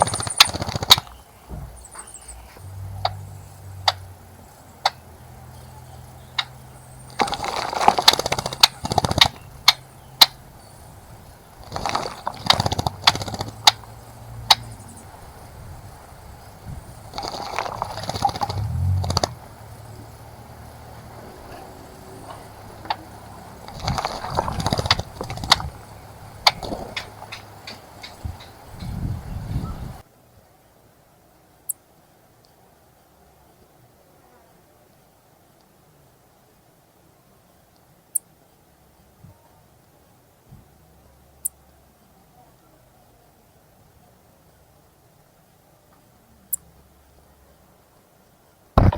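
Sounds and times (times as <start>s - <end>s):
birds splashing in bird bath: 0.0s - 30.0s
faint low hum: 0.0s - 48.9s
water drops ticking: 2.7s - 4.2s, 6.3s - 10.4s, 12.3s - 14.8s.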